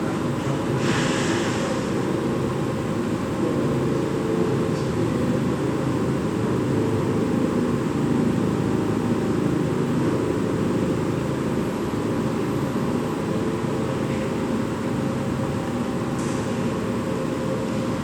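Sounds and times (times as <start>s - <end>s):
ventilation hum and hiss: 0.0s - 18.0s.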